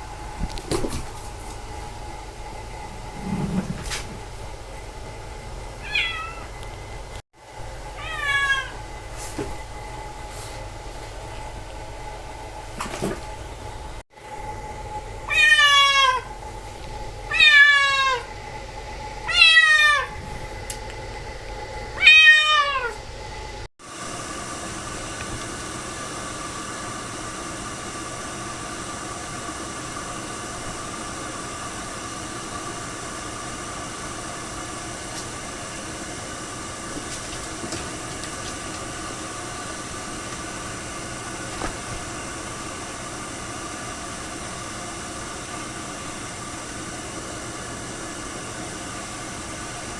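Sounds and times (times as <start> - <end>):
steady whirring with hum: 0.0 - 49.9
cat meowing: 5.8 - 6.5, 8.0 - 8.8, 15.3 - 16.3, 17.3 - 18.3, 19.2 - 20.2, 22.0 - 23.0.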